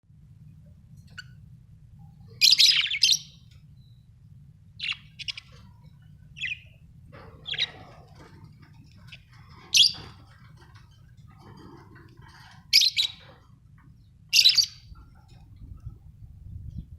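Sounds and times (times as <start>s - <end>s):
faint low hum: 0.1s - 16.9s
budgerigars chirping and squawking: 2.3s - 3.6s, 4.8s - 15.8s.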